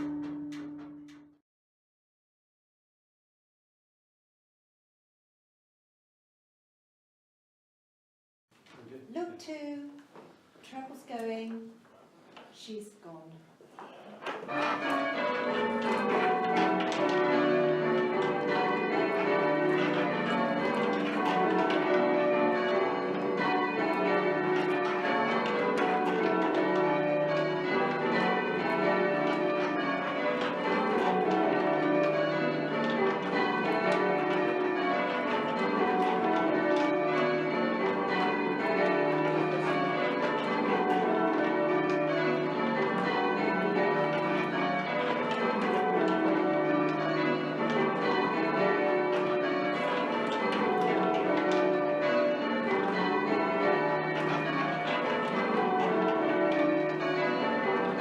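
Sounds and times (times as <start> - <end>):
church bells change ringing: 0.0 - 1.4, 14.2 - 58.0.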